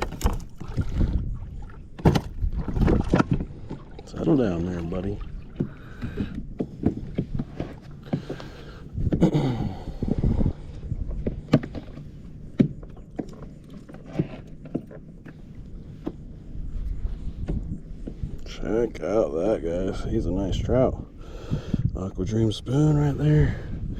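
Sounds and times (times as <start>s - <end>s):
scuffling and splashing: 0.0s - 8.9s
fish flopping on kayak hull: 0.0s - 18.9s.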